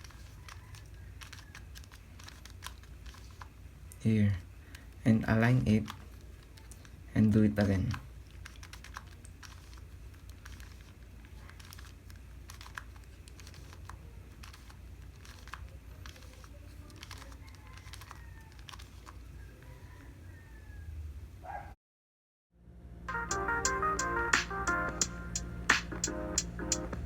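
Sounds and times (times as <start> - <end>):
puzzle cube layers clicking: 0.0 - 3.6, 7.8 - 19.2
low steady hum: 22.6 - 27.0.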